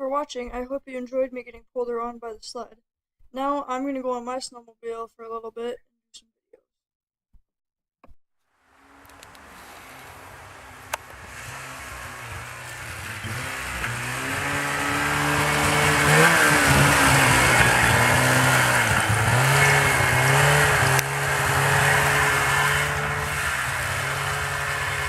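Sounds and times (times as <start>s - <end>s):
snowmobile engine running: 8.8s - 25.0s.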